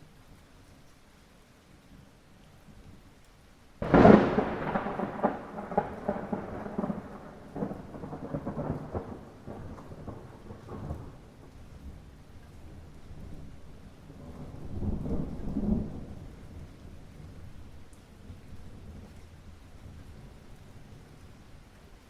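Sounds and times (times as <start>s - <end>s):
faint steady rain: 0.0s - 22.0s
thunderclap rumbling: 3.8s - 12.2s, 14.1s - 17.4s.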